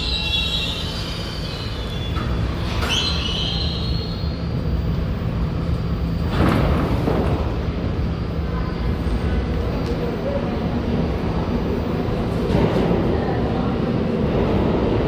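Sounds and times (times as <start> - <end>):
wheel squeal: 0.0 - 4.4
subway train rumble: 0.0 - 15.0.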